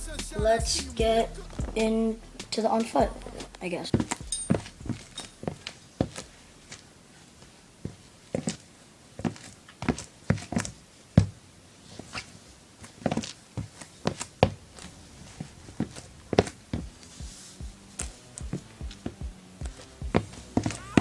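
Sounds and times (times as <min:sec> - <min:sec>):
sneakers tapping and knocking: 0:03.9 - 0:06.2, 0:15.8 - 0:21.0.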